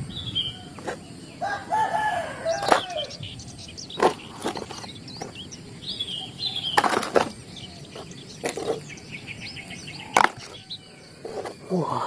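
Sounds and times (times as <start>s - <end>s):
toy vehicles knocking and clattering: 3.9s - 5.4s, 6.7s - 8.9s.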